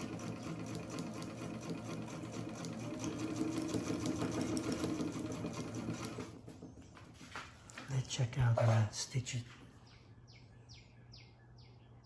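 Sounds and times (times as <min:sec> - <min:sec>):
sewing machine ticking: 0:00.0 - 0:06.4.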